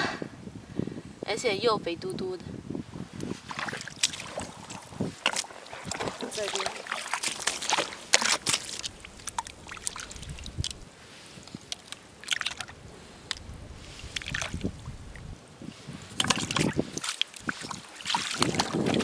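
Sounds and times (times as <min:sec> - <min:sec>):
wet squelches in mud: 0:03.2 - 0:19.0.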